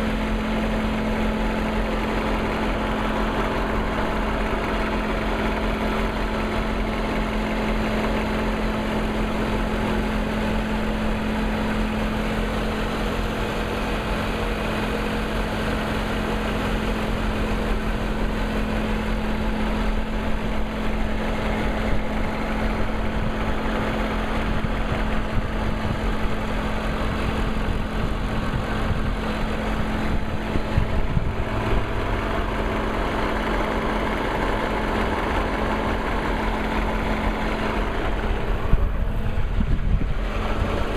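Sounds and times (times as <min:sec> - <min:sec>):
car engine idling: 0:00.0 - 0:40.9
engine ticking: 0:00.0 - 0:40.9.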